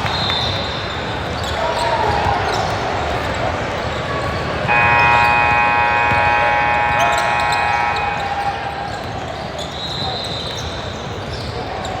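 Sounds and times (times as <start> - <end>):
basketball game background noise: 0.0 - 12.0
scoreboard buzzer blast: 4.7 - 8.6.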